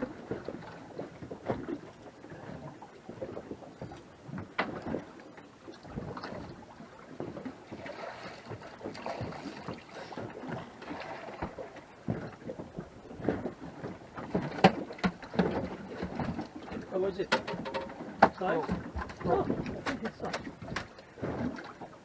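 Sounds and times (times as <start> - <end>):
water: 0.0 - 22.0
wind: 0.0 - 22.0
knocks on a fishing boat: 11.4 - 21.5.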